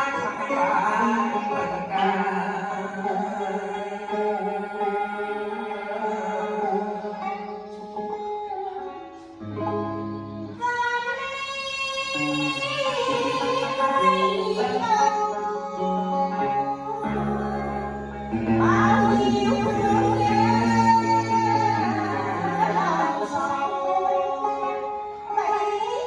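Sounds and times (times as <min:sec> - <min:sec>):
plucked guitar melody: 0:00.0 - 0:26.0
sustained bass notes: 0:16.4 - 0:24.0.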